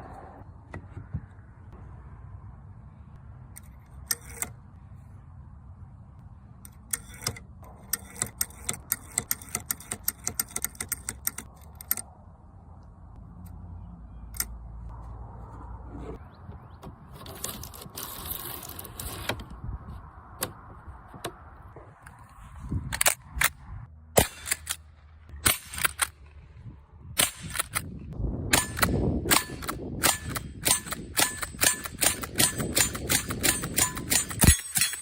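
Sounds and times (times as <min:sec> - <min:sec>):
rifle shots: 0:24.2 - 0:24.8.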